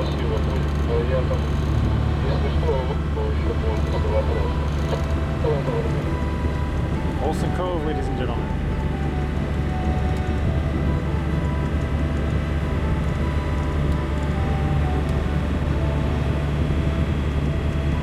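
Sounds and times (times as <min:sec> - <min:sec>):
boat engine droning: 0:00.0 - 0:18.0
faint whine: 0:00.0 - 0:18.0.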